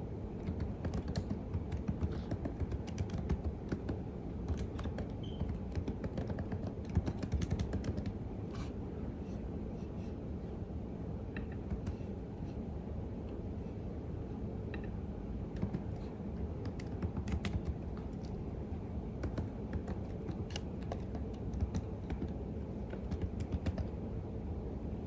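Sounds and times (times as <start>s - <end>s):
keyboard typing: 0.4s - 8.2s, 15.5s - 18.4s, 19.2s - 23.9s.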